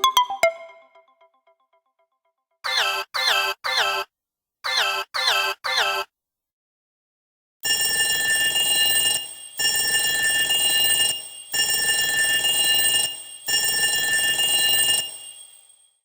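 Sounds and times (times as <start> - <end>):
phone alarm ringing: 7.6 - 15.8.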